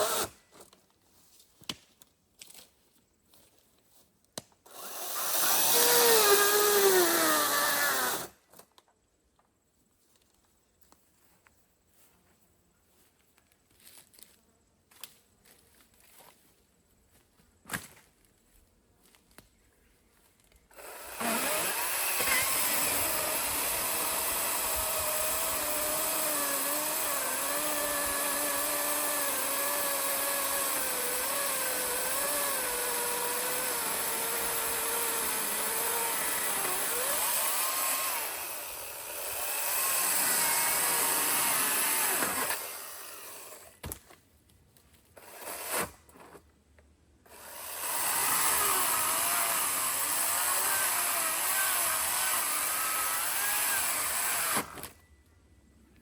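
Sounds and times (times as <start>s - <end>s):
chainsaw cutting log: 0.0s - 0.4s, 4.7s - 8.4s, 20.7s - 44.0s, 45.2s - 46.4s, 47.3s - 55.0s.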